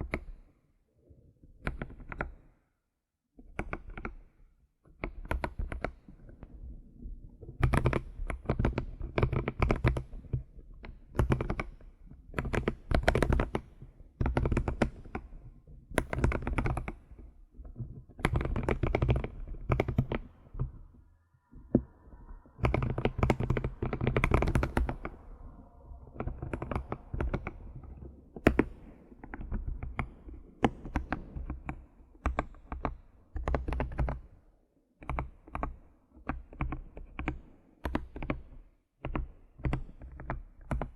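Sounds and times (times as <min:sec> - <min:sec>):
keyboard typing: 0:12.4 - 0:21.0, 0:21.6 - 0:34.2.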